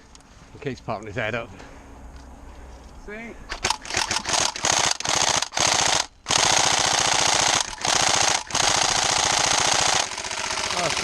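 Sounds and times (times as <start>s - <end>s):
airsoft rifle firing bursts: 3.5s - 11.0s.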